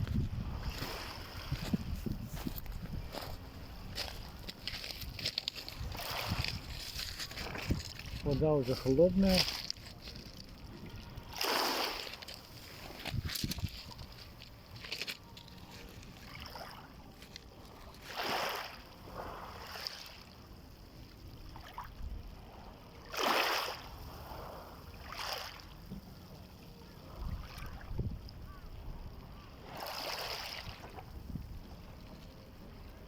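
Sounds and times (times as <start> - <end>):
small waves splashing on shore: 0.4 - 1.8, 3.0 - 17.0, 17.6 - 20.5, 23.0 - 25.8, 29.5 - 31.9.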